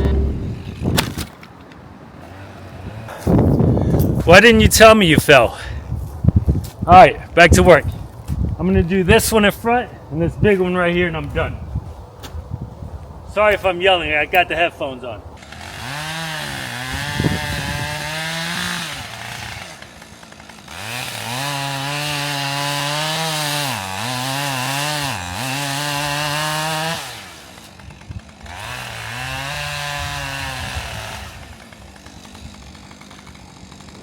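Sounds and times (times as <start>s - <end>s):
chainsaw cutting wood: 0.0s - 1.2s, 2.2s - 3.4s, 15.4s - 34.0s.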